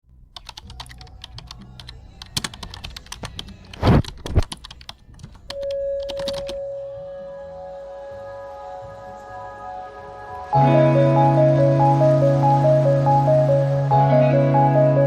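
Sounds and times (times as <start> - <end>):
rapid keyboard clicking: 0.4 - 6.6.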